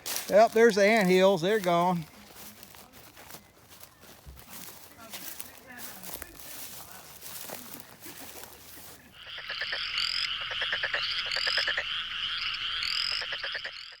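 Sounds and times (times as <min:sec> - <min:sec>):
frogs croaking: 0:08.7 - 0:14.0.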